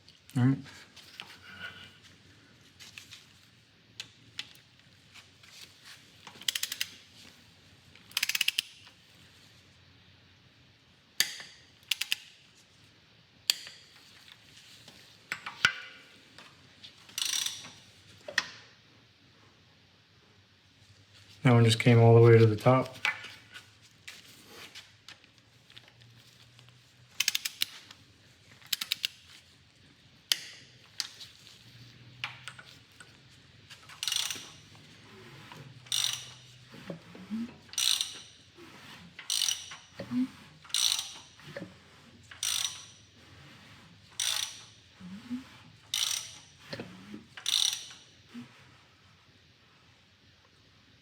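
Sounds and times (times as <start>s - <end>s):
hand ratchet clicking: 6.4s - 6.9s, 8.1s - 8.8s, 11.2s - 12.3s, 17.1s - 17.8s, 27.2s - 27.8s, 28.6s - 29.2s, 30.3s - 31.1s, 33.9s - 34.6s, 35.8s - 36.5s, 37.7s - 38.4s, 39.2s - 39.9s, 40.6s - 41.4s, 42.3s - 43.0s, 44.2s - 44.8s, 45.9s - 46.6s, 47.4s - 48.0s.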